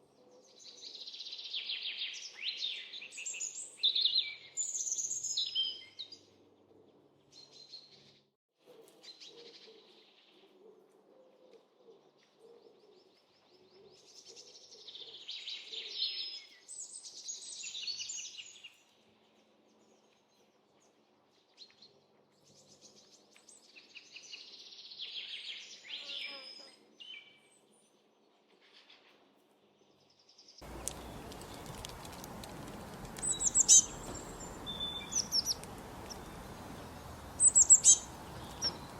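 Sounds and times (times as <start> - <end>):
songbirds chirping and trilling: 29.8 - 38.9.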